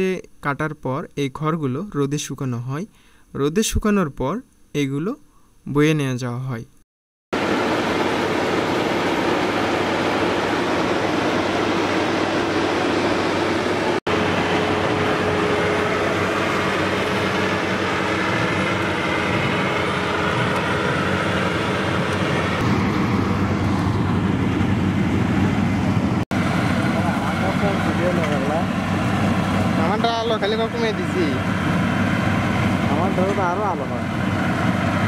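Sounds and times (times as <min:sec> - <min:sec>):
combine harvester running: 0:07.4 - 0:35.0.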